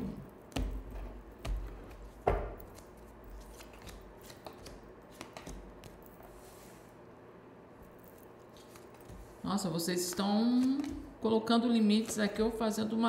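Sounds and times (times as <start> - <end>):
cards knocking on a table: 0.5 - 2.8
cards ticking and rustling: 2.7 - 6.0.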